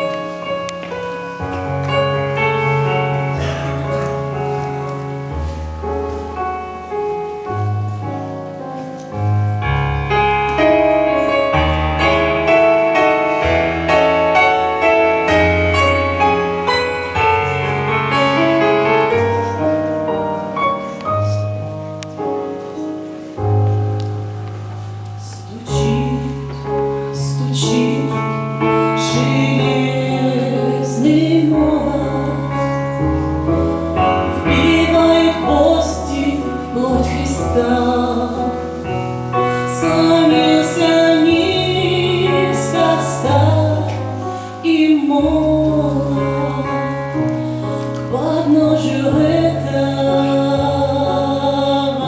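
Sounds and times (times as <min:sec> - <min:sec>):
slow keyboard hymn melody: 0:00.0 - 0:52.0.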